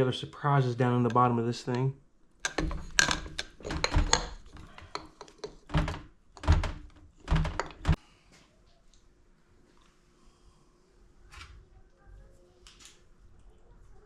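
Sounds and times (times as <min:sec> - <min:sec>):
tools knocking and clunking: 0:02.4 - 0:08.0.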